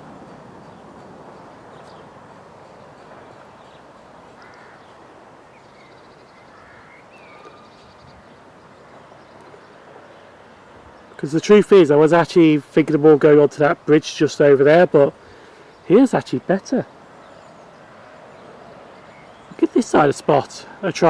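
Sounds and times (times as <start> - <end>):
bird chirps: 0.0 - 11.3, 16.6 - 20.8
low outdoor hiss: 0.0 - 21.0.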